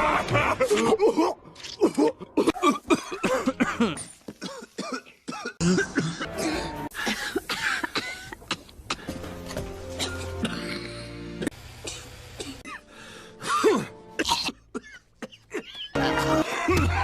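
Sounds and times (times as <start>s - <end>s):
background music: 5.6s - 7.3s, 8.9s - 17.0s.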